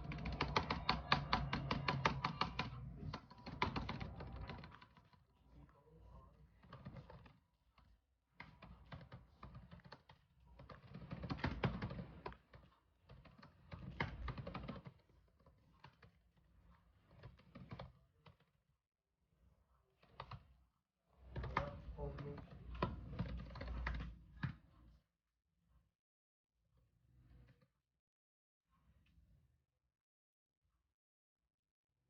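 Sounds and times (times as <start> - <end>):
typing on computer keyboard: 0.0 - 5.2, 6.6 - 7.4, 8.4 - 15.0, 21.4 - 24.5.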